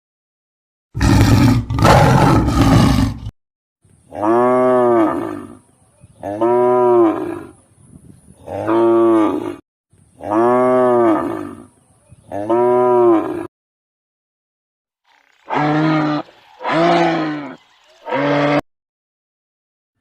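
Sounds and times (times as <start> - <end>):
harsh roar-like animal call: 1.0 - 3.3, 4.1 - 5.6, 6.2 - 7.6, 8.4 - 9.6, 10.2 - 11.7, 12.3 - 13.5, 15.5 - 18.6
cow mooing: 4.1 - 5.6, 8.5 - 9.6, 10.2 - 11.7, 12.3 - 13.5.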